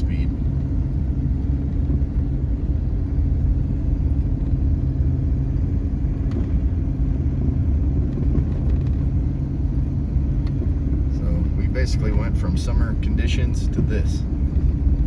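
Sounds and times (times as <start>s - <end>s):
truck rumbling through snow: 0.0s - 15.0s.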